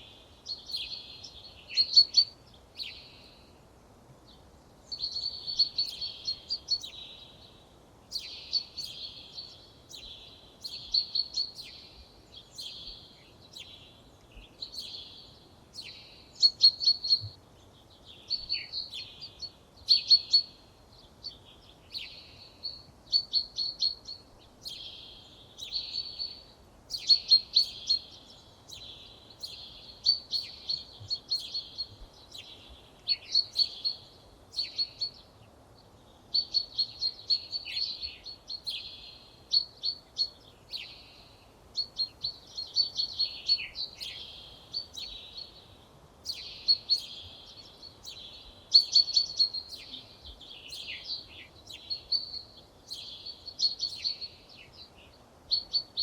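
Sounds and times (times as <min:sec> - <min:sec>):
songbird trilling: 0:04.9 - 0:07.2, 0:36.3 - 0:54.8.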